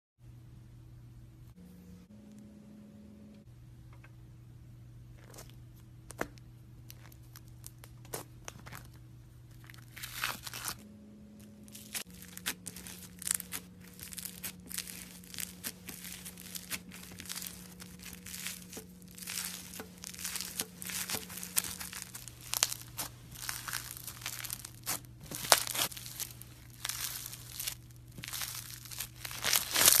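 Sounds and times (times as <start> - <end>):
slime crackling and popping: 9.5 - 10.8, 11.7 - 30.0.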